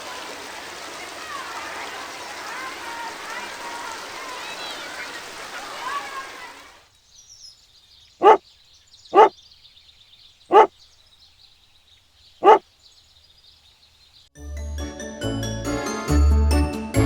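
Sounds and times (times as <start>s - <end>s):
dog barking: 9.1s - 9.3s, 10.5s - 10.7s, 12.4s - 12.6s.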